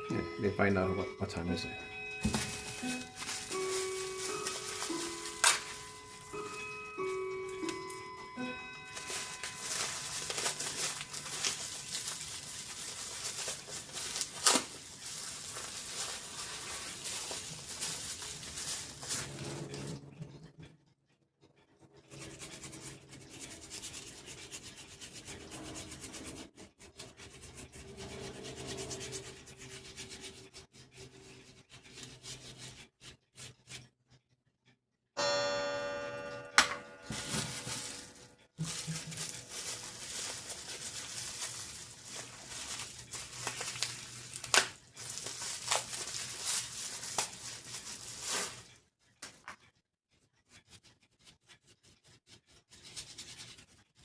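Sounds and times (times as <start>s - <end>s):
brush scrubbing clock parts: 2.2s - 8.0s, 8.8s - 20.0s, 22.0s - 34.3s, 37.0s - 54.0s
steady pitched tone: 35.2s - 39.8s.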